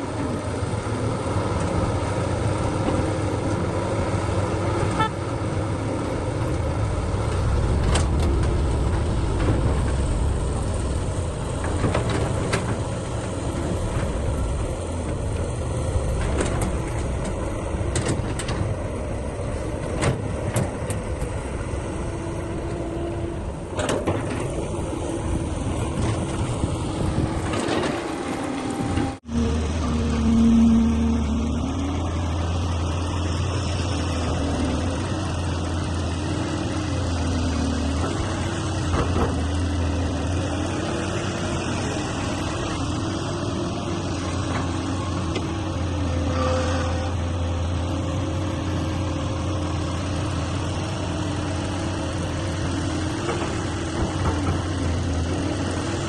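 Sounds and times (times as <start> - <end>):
heavy diesel machinery running: 0.0 - 56.0.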